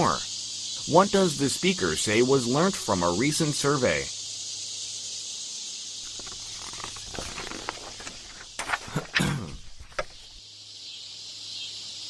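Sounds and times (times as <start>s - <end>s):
steady high hiss: 0.0s - 12.0s
knocks clicks and rustles: 6.1s - 10.4s.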